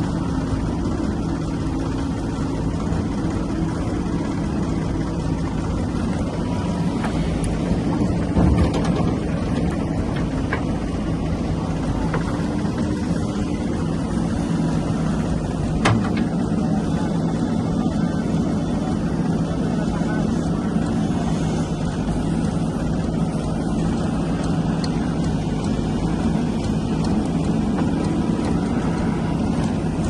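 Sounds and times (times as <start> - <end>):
heavy diesel engines running: 0.0 - 30.0.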